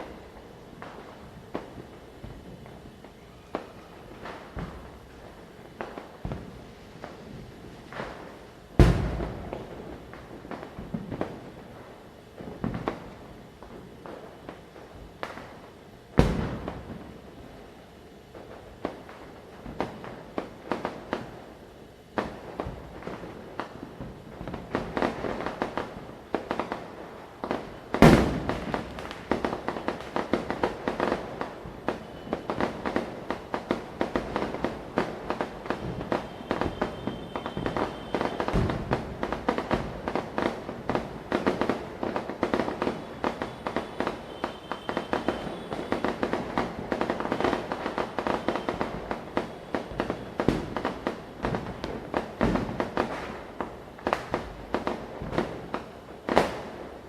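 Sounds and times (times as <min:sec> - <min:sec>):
firecrackers crackling and popping: 0:00.0 - 0:57.0
loud firecracker bang: 0:08.0 - 0:11.4, 0:16.2 - 0:17.0, 0:27.6 - 0:53.4.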